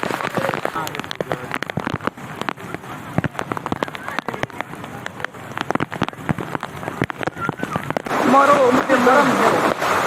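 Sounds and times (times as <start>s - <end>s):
heavy rain: 0.0s - 10.0s
raindrops tapping a hard surface: 0.0s - 10.0s.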